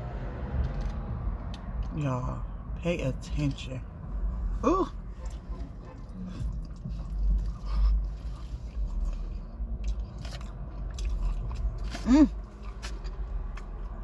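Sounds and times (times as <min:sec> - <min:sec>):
low rumble: 0:00.0 - 0:14.0
chewing and biting food: 0:05.2 - 0:14.0.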